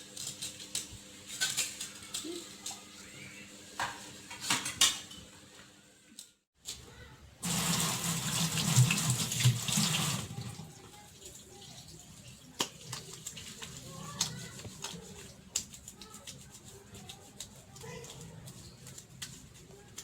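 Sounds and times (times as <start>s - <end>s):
tap water running into sink: 7.4s - 13.8s.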